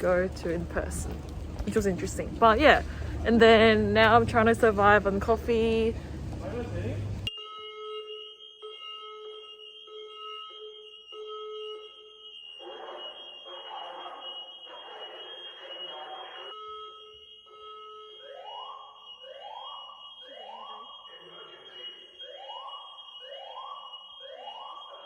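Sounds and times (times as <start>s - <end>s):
steady high tone: 7.2s - 25.0s
pulsing electronic beeps: 7.3s - 25.0s.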